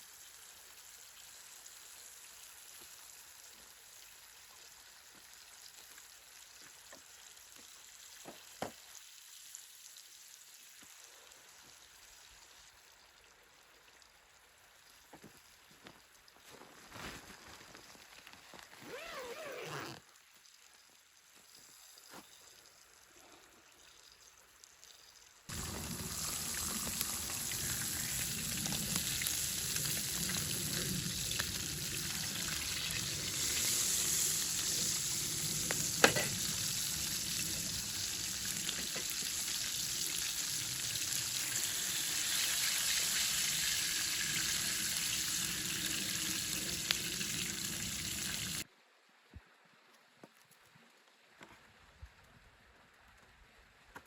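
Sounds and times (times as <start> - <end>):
food sizzling in a pan: 25.5 - 48.6.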